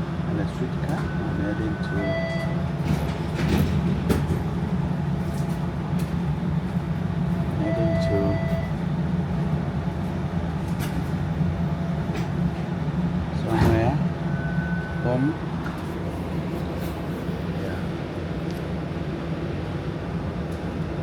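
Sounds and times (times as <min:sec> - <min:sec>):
streetcar rumbling on tracks: 0:00.0 - 0:21.0.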